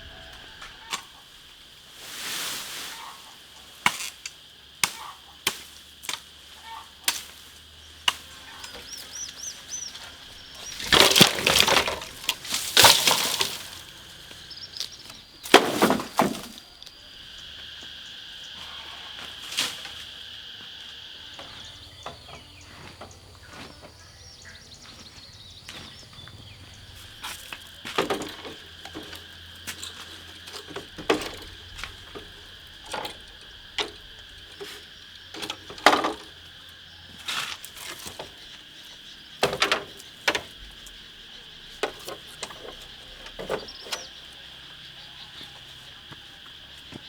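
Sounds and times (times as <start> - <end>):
brush crackling and rustling: 0.0 - 16.9
branches snapping: 7.0 - 17.0.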